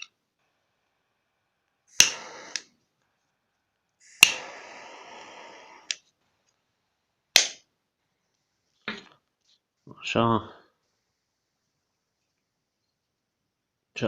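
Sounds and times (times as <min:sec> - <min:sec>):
gas flame hissing: 0:01.8 - 0:02.8, 0:04.0 - 0:06.1
lighter ignition click: 0:01.9 - 0:02.7, 0:04.1 - 0:06.0.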